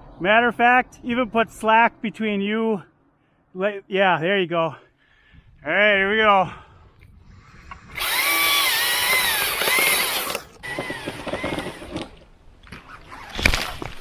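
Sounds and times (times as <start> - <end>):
rope whirring through friction device: 7.2 - 12.2.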